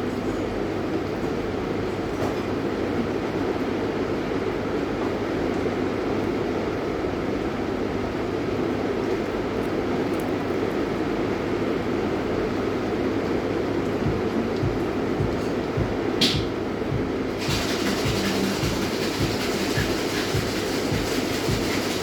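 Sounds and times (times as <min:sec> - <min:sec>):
steady rain: 0:08.5 - 0:16.2, 0:16.8 - 0:22.0.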